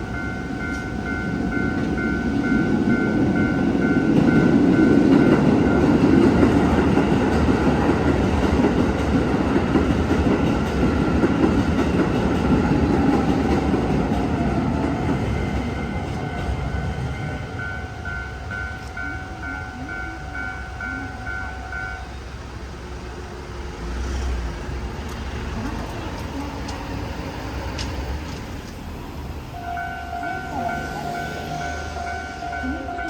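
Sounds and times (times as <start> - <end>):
level crossing bell ringing: 0.0 - 6.7, 15.2 - 22.2, 29.5 - 33.0
train rumble: 0.0 - 33.0.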